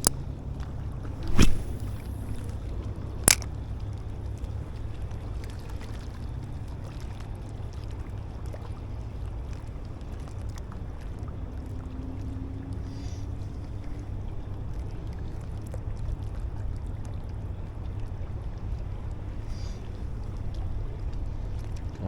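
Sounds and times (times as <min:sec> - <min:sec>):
river water rumbling: 0:00.0 - 0:22.0
wind: 0:00.0 - 0:22.0
sharp click: 0:01.2 - 0:02.1, 0:03.3 - 0:03.5.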